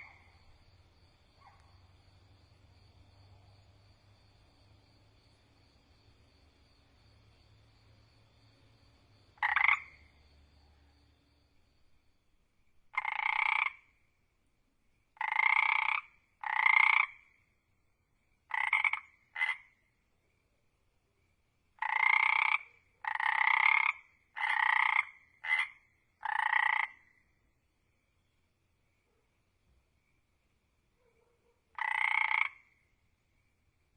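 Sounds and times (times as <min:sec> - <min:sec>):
frog croaking: 0:00.0 - 0:02.6, 0:09.2 - 0:10.8, 0:12.9 - 0:14.0, 0:15.2 - 0:17.4, 0:18.5 - 0:19.9, 0:21.8 - 0:27.3, 0:31.7 - 0:32.9.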